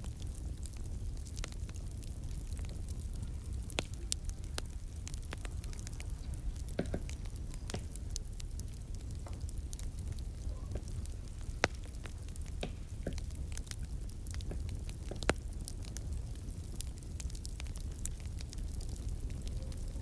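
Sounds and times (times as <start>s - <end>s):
wood fire popping and snapping: 0.0s - 20.0s.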